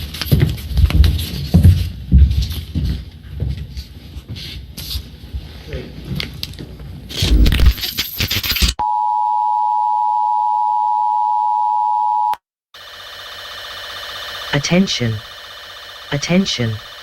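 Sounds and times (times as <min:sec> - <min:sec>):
noisy crackle: 0:07.1 - 0:08.3, 0:12.8 - 0:17.0.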